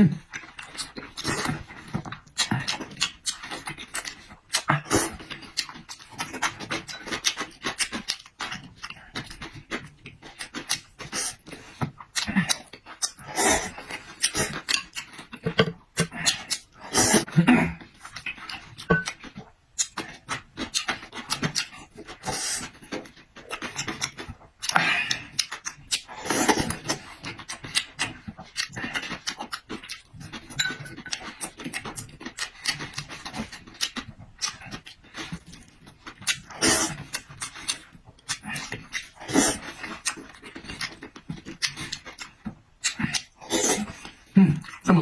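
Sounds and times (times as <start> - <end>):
wet chewing and lip-smacking: 0.0 - 45.0
slurps: 32.4 - 42.0.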